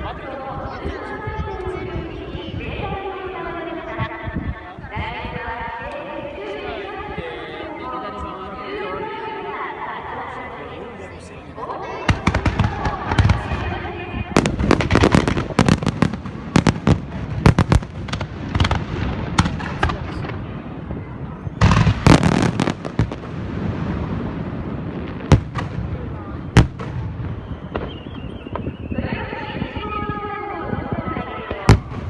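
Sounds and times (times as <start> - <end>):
crowd voices: 0.0 - 32.0
fireworks bangs with rumbling echo: 11.2 - 32.0.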